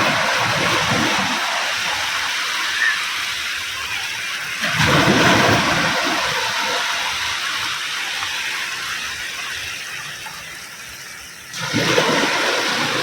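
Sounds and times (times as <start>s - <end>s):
wave breaking: 0.0s - 7.8s, 11.6s - 13.0s
foam washing out hiss: 0.0s - 13.0s
sea background: 0.0s - 13.0s.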